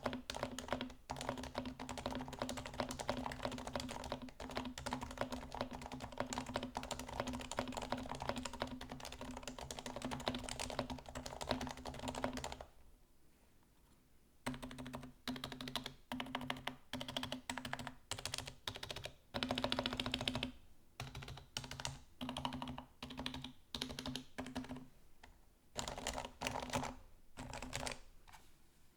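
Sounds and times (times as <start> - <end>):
keyboard typing: 0.0 - 12.7, 14.4 - 28.1.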